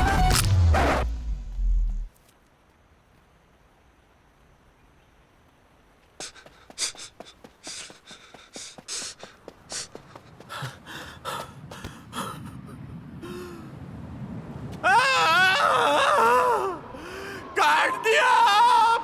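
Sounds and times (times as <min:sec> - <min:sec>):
person gasping and panting: 0:06.2 - 0:13.7.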